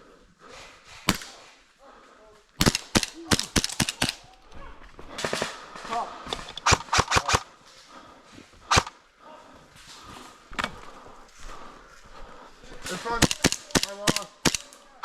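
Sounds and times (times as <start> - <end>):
airsoft gun shots: 1.1 - 1.5, 2.6 - 4.2, 13.2 - 14.7.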